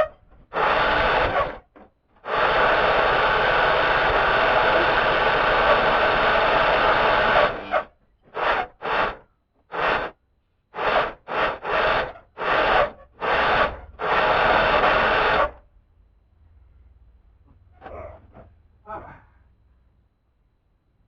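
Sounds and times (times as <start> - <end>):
engine cranking without starting: 0.0 - 10.2, 10.8 - 15.6.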